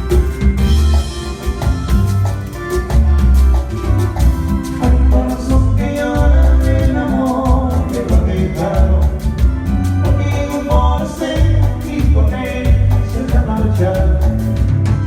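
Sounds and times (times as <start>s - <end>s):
heavy bass beat: 0.0s - 15.0s
latin dance music: 0.0s - 15.0s
person singing: 4.8s - 14.6s.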